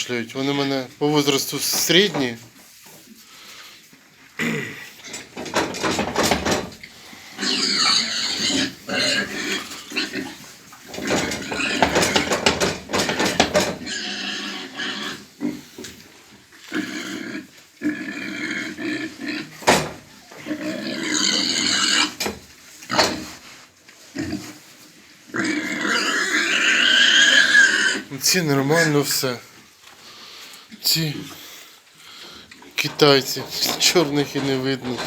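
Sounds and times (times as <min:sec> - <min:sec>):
pigs grunting and calling: 0:04.4 - 0:23.4, 0:25.3 - 0:29.1.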